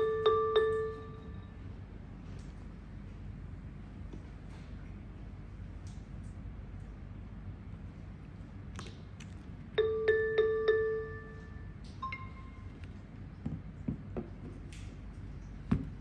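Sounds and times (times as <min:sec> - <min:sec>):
electronic bell-like chime: 0:09.8 - 0:12.7.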